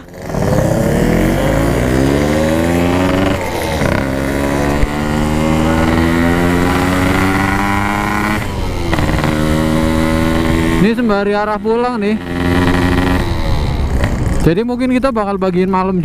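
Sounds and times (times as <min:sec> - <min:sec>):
two-stroke motorcycle accelerating: 0:00.0 - 0:15.1.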